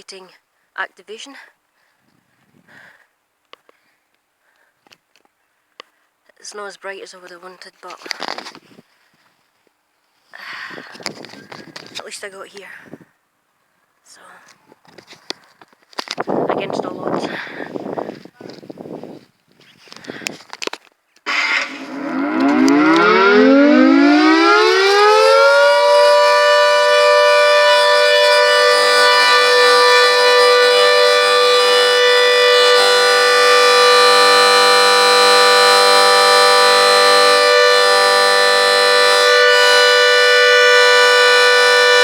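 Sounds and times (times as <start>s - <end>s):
siren winding up: 21.3s - 42.0s.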